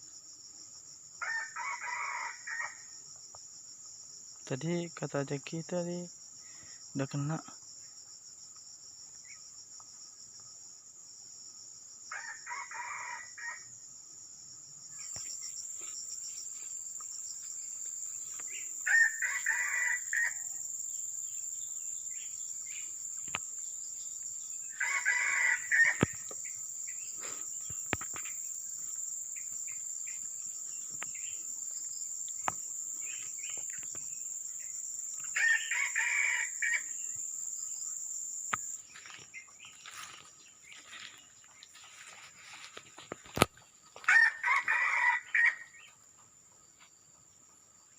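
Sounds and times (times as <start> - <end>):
high drone of insects: 0.0 - 47.9
junglefowl crowing: 1.2 - 2.8, 12.1 - 13.7, 18.5 - 20.6, 24.7 - 26.4, 35.3 - 36.9, 44.0 - 45.9.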